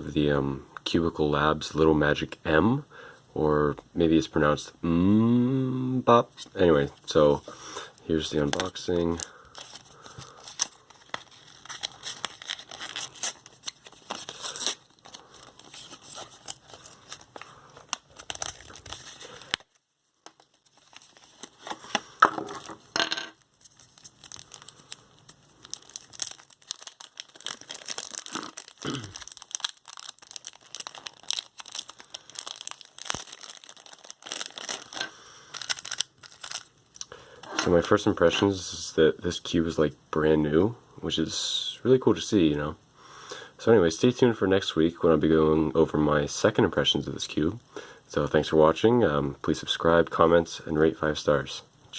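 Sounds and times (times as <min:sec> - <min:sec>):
plastic and paper tearing: 0:09.6 - 0:19.8, 0:25.6 - 0:36.7
packaging clicks: 0:25.7 - 0:36.7.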